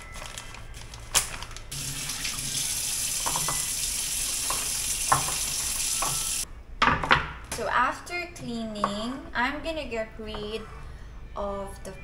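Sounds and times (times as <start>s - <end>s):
tap water running: 1.7s - 6.4s.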